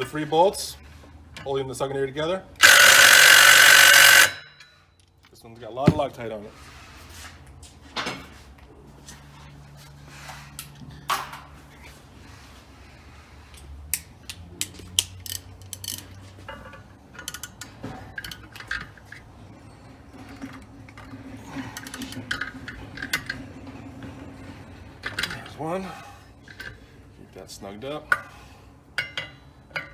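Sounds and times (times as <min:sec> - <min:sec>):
hand tools clicking on bolts: 0:02.6 - 0:04.4.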